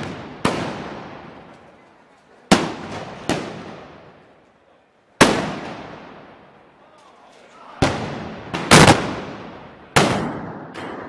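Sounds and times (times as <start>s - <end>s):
loud gunpowder bangs with echo: 0.0s - 1.4s, 5.2s - 6.3s, 7.8s - 11.0s.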